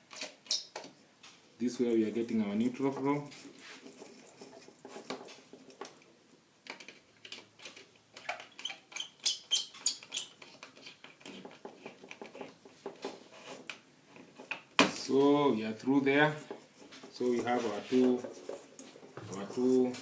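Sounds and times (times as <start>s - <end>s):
wiring clicks and scrapes: 0.0s - 1.4s, 2.8s - 6.0s, 6.7s - 14.7s.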